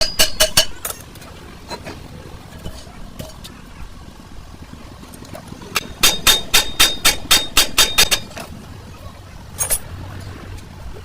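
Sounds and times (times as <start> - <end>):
hammer striking steel: 0.0 - 1.0, 5.8 - 8.3.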